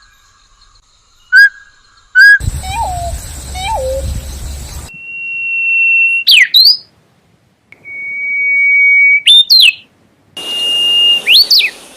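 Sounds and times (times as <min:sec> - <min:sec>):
bird whistled call: 0:01.3 - 0:06.9, 0:07.8 - 0:09.8, 0:10.4 - 0:11.9.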